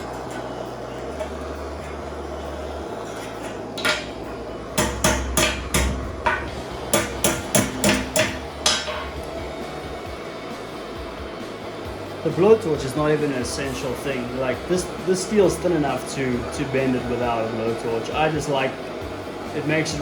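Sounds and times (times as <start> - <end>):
steady hiss: 0.0 - 20.0
hammer tapping on thin steel: 4.8 - 9.2.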